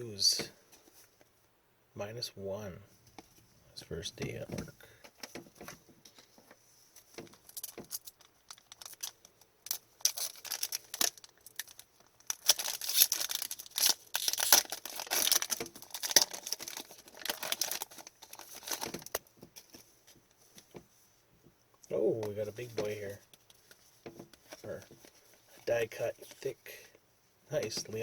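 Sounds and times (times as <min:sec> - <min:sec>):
cards rustling and clicking: 0:05.2 - 0:20.8
wrapper crinkling: 0:07.2 - 0:19.8
foil pack tearing: 0:07.4 - 0:19.2.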